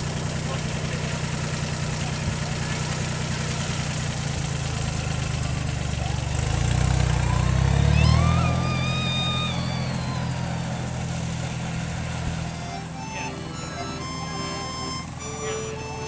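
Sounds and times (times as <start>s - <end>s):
engine running: 0.0s - 16.0s
high tone with overtones: 12.4s - 16.0s.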